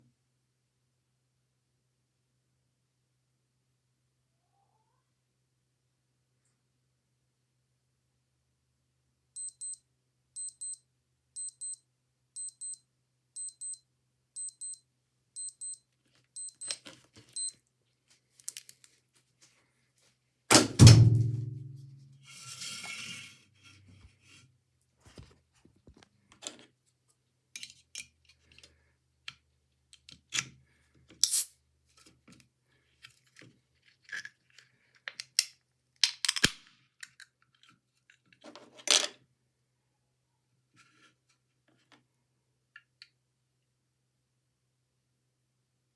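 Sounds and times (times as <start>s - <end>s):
digital watch double beeps: 9.4s - 9.8s, 10.4s - 10.8s, 11.4s - 11.8s, 12.4s - 12.8s, 13.4s - 13.8s, 14.4s - 14.8s, 15.4s - 15.8s, 16.4s - 16.8s.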